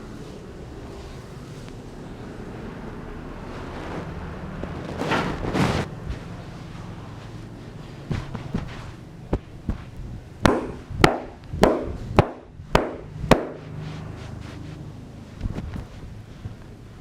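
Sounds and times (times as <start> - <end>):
massage hand slaps: 8.1 - 13.7.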